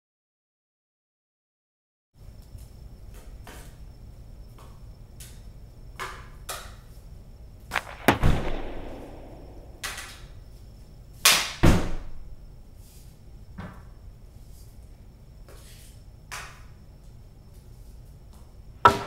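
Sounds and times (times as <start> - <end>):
hockey shot cracks: 7.8 - 10.3.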